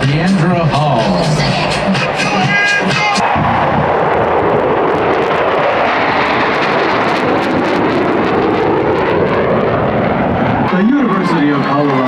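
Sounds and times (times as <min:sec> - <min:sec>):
stadium crowd cheering and applauding: 0:01.2 - 0:05.0.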